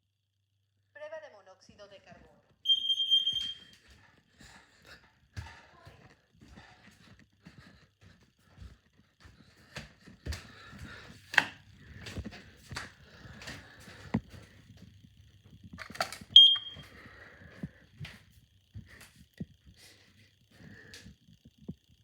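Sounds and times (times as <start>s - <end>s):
smoke alarm beep: 2.6s - 3.8s, 16.2s - 17.0s.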